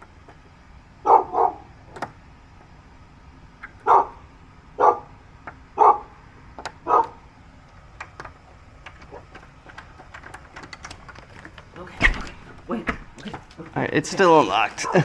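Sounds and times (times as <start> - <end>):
dog barking: 1.0 - 1.7, 3.8 - 4.2, 4.8 - 5.1, 5.8 - 6.2, 6.8 - 7.2.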